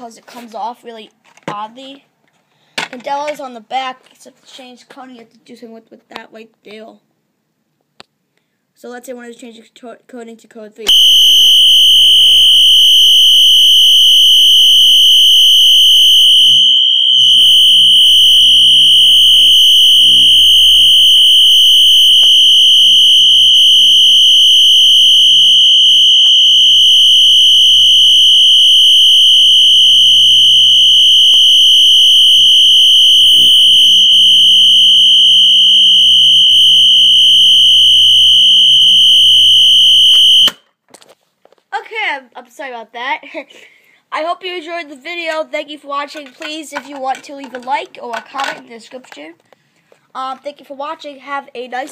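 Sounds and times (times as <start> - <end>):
fire alarm horn steady tone: 10.9 - 40.6.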